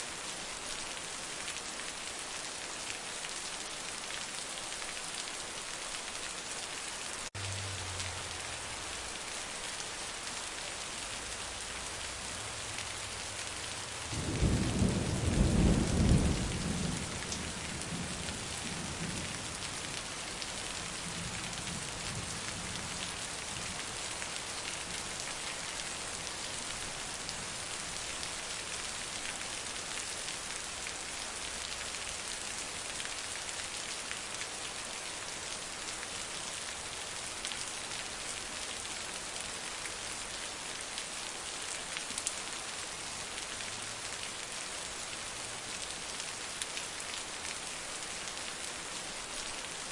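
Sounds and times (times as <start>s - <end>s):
heavy rain falling: 0.0s - 49.9s
thunder rumble: 14.1s - 19.2s.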